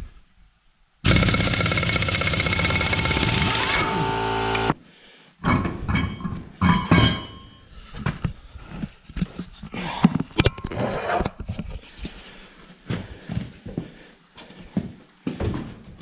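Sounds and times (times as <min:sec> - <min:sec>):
impact wrench hammering: 0:01.1 - 0:04.8
metal clanks and knocks: 0:05.4 - 0:07.6.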